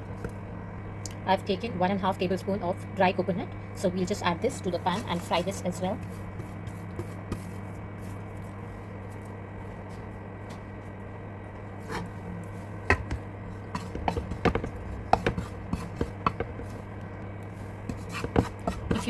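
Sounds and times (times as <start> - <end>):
steady low hum: 0.0 - 19.0
spatula scraping a pan: 12.9 - 16.7, 17.8 - 19.0.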